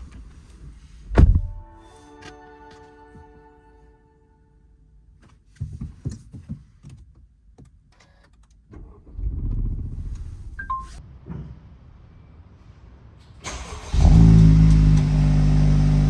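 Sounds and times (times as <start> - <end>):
car engine starting and running: 8.7 - 11.0, 13.4 - 16.0.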